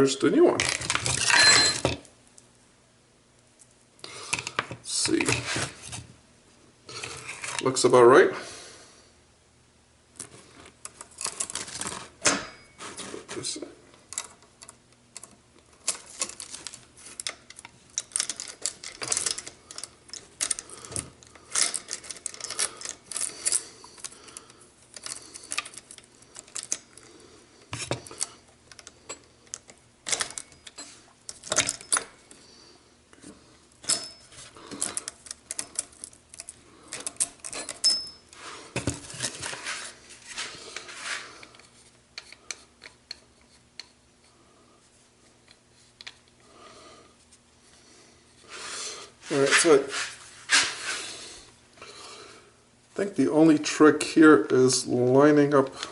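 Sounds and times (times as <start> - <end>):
saw chain clinking and rattling: 0.6 - 2.0.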